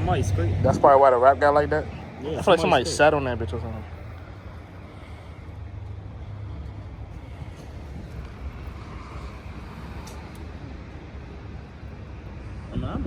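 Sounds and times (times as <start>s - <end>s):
low vehicle rumble: 0.0s - 13.0s
wind on microphone: 6.9s - 11.2s.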